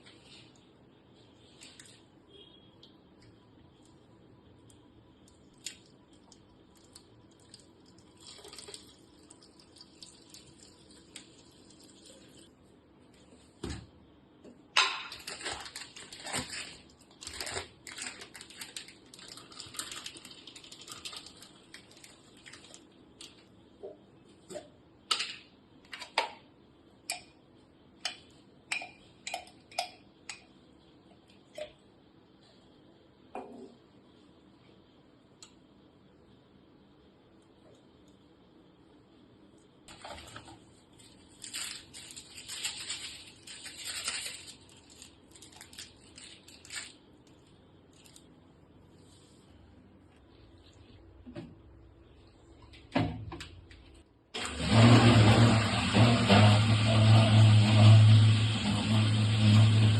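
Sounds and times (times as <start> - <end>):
small objects clattering: 39.9 - 47.0.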